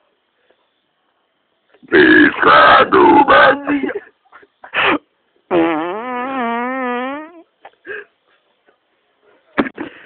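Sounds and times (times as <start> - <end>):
person passing gas: 1.9 - 4.0, 4.7 - 8.1.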